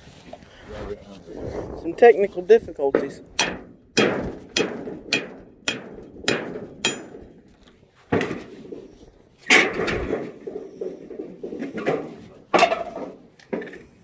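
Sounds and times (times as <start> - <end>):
hammer blows on wood: 2.9 - 7.5.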